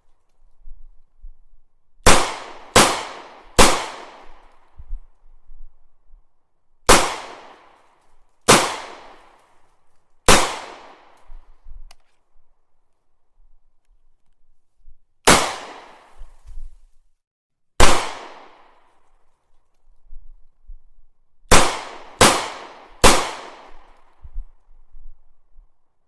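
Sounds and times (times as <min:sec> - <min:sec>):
gunshots with echo: 0:02.0 - 0:04.4, 0:06.9 - 0:07.7, 0:08.5 - 0:09.2, 0:10.3 - 0:11.2, 0:15.3 - 0:16.1, 0:17.8 - 0:18.7, 0:21.5 - 0:23.9.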